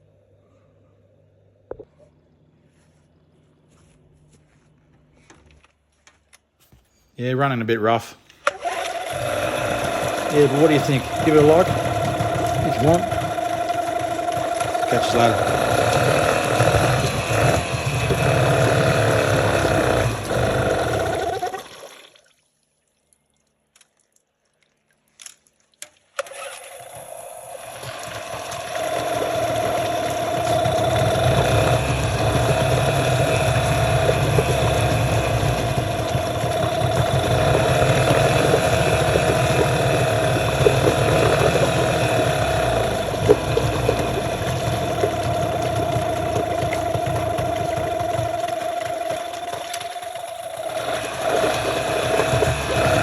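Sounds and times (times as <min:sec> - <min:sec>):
outboard motor running: 0:08.4 - 0:21.9, 0:26.2 - 0:53.0.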